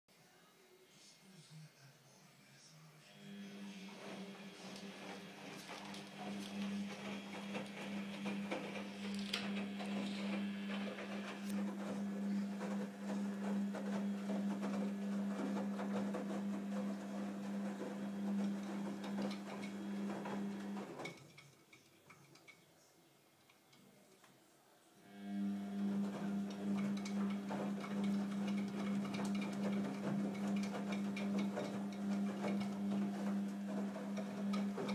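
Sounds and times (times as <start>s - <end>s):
toy car motor humming: 3.2s - 16.9s
small clicks and rattles: 4.6s - 22.8s, 26.1s - 34.9s.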